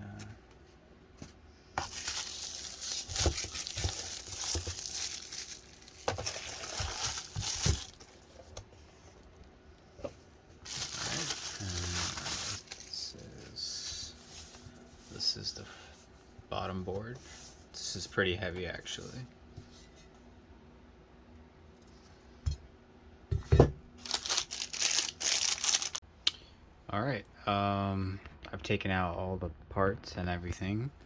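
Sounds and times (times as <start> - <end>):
plastic packaging crinkling: 1.8 - 8.4, 10.7 - 13.2, 24.0 - 26.0.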